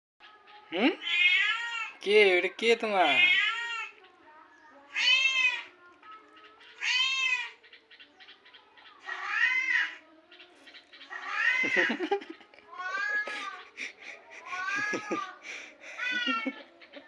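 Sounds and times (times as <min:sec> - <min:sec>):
kittens mewing: 0:00.3 - 0:02.0, 0:02.8 - 0:17.0.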